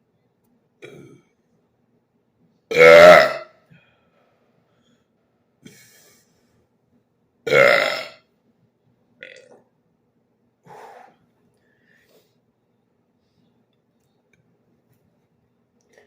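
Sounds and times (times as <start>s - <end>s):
man belching: 2.7s - 3.5s, 7.5s - 8.2s.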